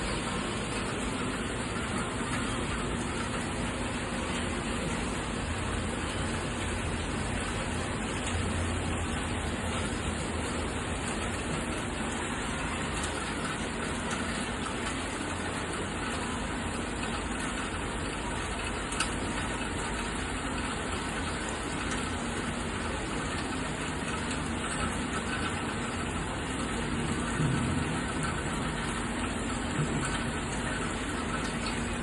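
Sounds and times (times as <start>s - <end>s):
steady rain falling: 0.0s - 32.0s.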